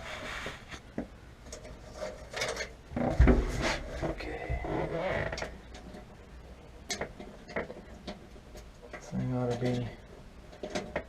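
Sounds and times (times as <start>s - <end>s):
heavy thump: 3.1s - 4.7s.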